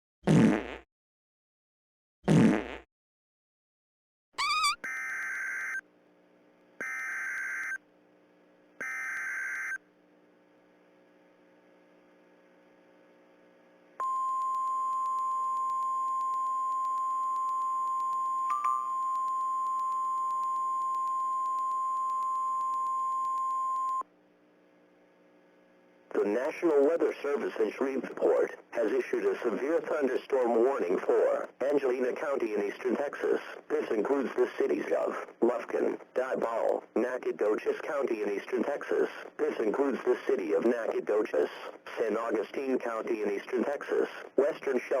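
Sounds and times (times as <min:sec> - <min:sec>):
alert tone sweeps: 0:04.4 - 0:04.8
rising chirp: 0:04.4 - 0:04.8
steady single-pitch attention tone: 0:04.4 - 0:04.8
warbling digital header bursts: 0:04.4 - 0:04.8.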